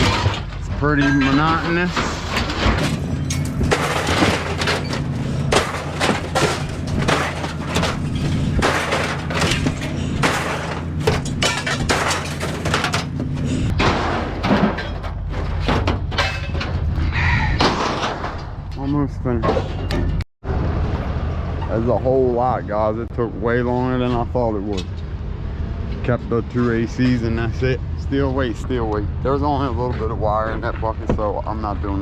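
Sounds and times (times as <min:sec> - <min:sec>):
truck engine hum: 0:00.0 - 0:17.1
scrap metal clanging and crashing: 0:00.0 - 0:20.2.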